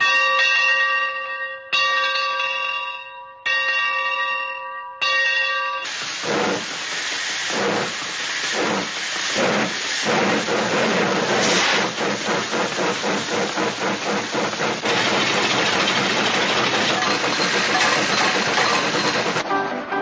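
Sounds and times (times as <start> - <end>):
rhythmic loud hissing: 5.9 - 19.4
bell ringing: 16.6 - 19.5.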